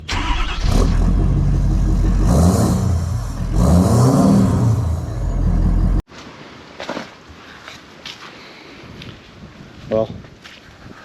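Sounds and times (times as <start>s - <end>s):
vehicle engine revving: 0.0s - 6.0s.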